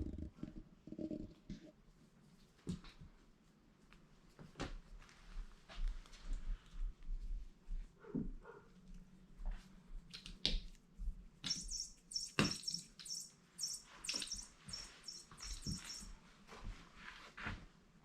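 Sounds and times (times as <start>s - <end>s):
cat toy chirping: 11.5s - 16.1s
knocks and scuffles: 15.3s - 17.8s.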